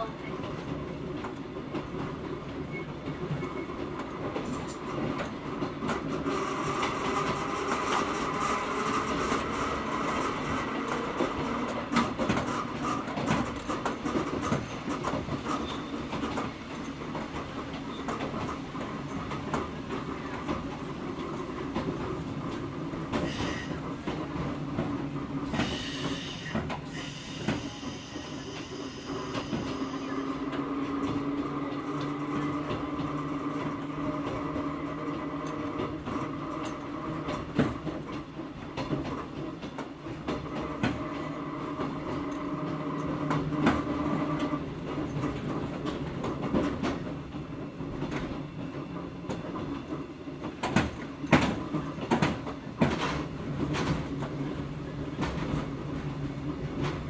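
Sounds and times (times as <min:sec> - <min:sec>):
rail-joint clicks: 0:00.1 - 0:57.0
railcar motor whine: 0:01.4 - 0:38.9, 0:39.5 - 0:57.0
wheel squeal: 0:25.7 - 0:30.4.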